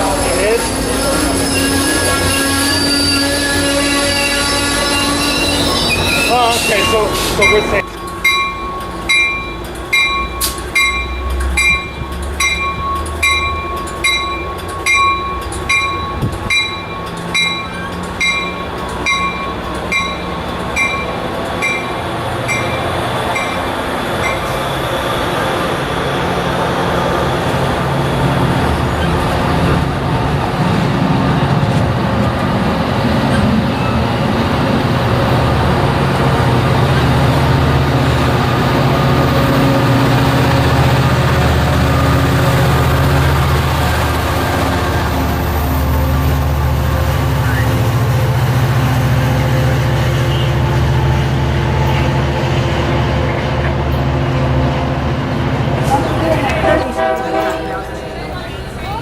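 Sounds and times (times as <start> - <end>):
railroad crossing bell ringing: 0.0 - 30.0, 55.8 - 59.0
train rumbling: 0.0 - 59.0.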